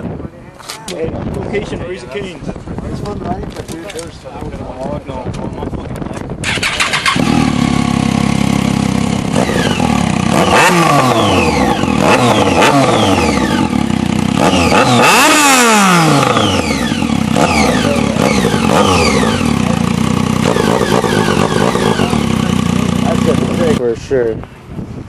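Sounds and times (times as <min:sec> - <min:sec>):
motorcycle engine revving: 0:06.4 - 0:23.8.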